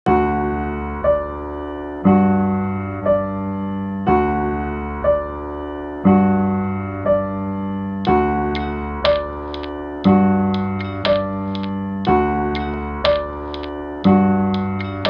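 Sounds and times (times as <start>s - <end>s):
electric piano chords: 0.1s - 15.0s
high percussive clicks: 8.1s - 13.8s, 14.5s - 15.0s.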